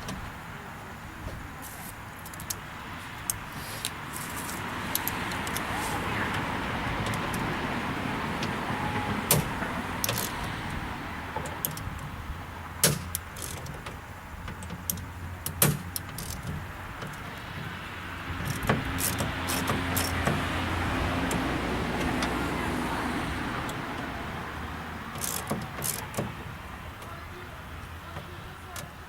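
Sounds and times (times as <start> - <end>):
clicks of hand tools on metal: 25.1 - 26.4.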